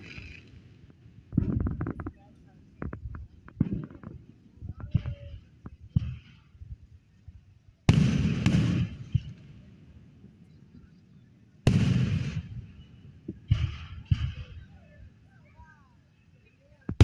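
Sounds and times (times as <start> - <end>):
fireworks shells bursting: 0.0 - 2.1.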